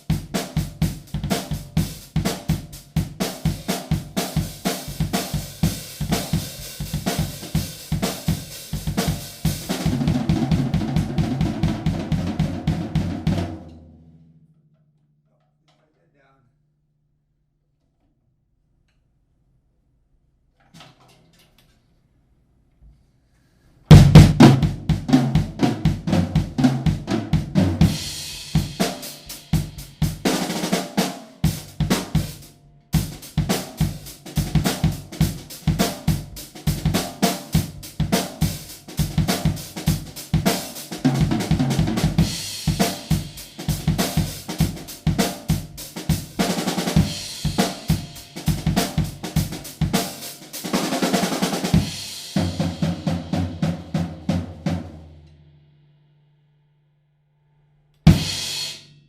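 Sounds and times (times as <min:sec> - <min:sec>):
drum kit playing: 0:00.0 - 0:14.4, 0:23.9 - 0:55.2, 0:58.0 - 0:59.0.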